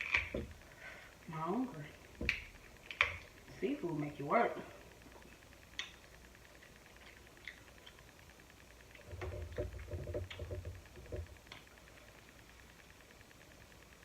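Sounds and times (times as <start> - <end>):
shellfish shells clicking: 0.0 - 0.4
chewing and mouth sounds: 5.8 - 8.1.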